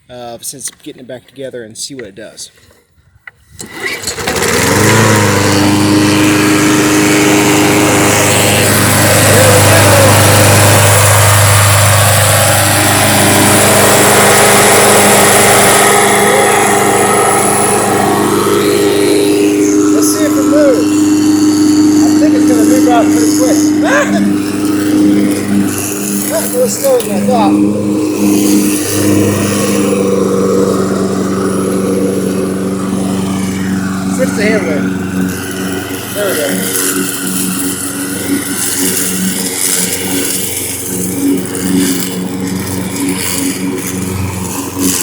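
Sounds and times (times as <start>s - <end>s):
push mower engine running: 3.3s - 45.0s.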